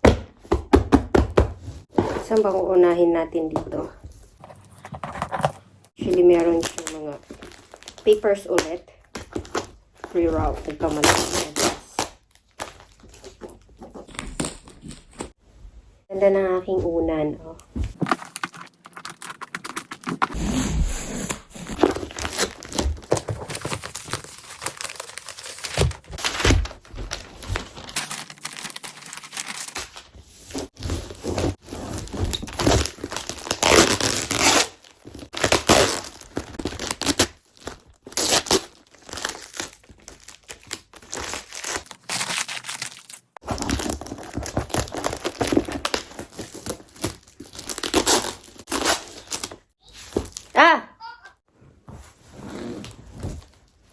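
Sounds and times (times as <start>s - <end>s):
papers crumpling: 6.3s - 8.2s, 17.9s - 20.4s, 21.7s - 50.5s
packaging tearing: 18.1s - 30.1s, 30.8s - 49.6s.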